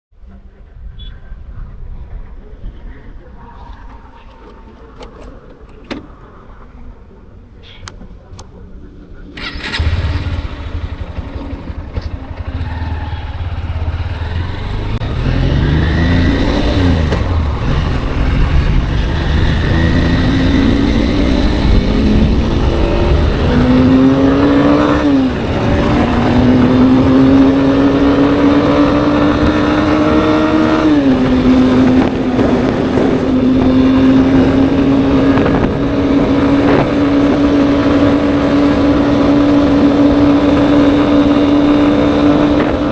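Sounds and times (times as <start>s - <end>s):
motorcycle engine: 9.3s - 42.9s
wind rush: 14.9s - 42.9s.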